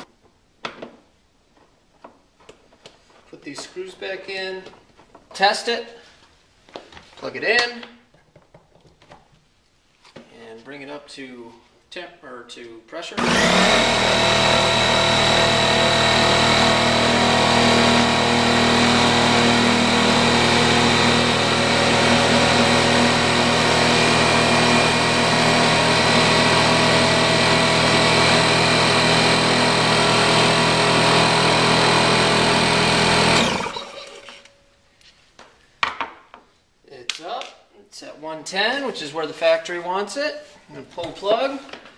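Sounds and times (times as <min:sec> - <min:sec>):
electric air compressor running: 0:13.2 - 0:34.5.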